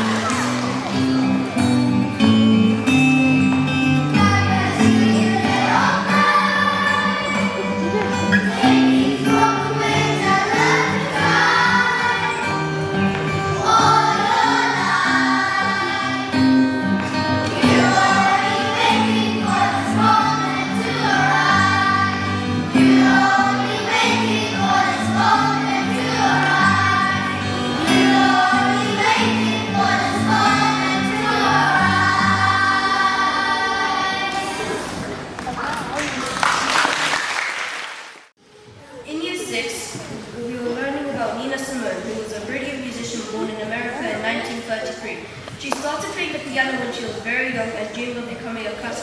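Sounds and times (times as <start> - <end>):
instrumental backing: 0.0 - 34.8
children singing: 3.8 - 35.2.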